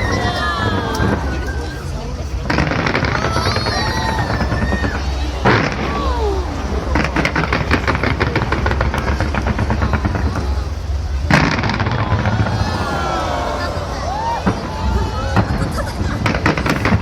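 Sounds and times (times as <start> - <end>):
crowd voices: 0.0 - 17.0
fireworks crackling pops: 0.6 - 12.8, 14.1 - 17.0
loud firework bang: 6.9 - 13.4, 14.2 - 17.0.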